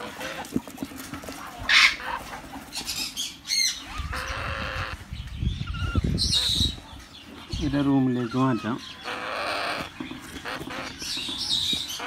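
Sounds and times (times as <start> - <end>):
parrot squawks: 3.5 - 5.0, 8.2 - 11.0.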